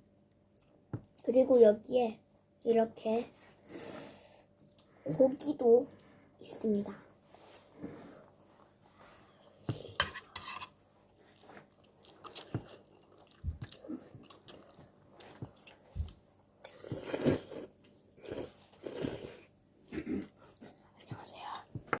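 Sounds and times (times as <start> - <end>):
chewing noodles: 11.0 - 19.3.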